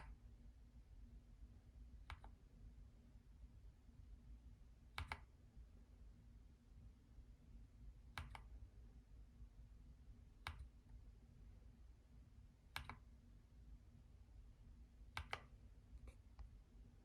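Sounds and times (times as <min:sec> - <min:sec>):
keyboard key clicks: 0:05.0 - 0:05.3, 0:10.4 - 0:10.7, 0:12.7 - 0:13.0, 0:15.1 - 0:15.5.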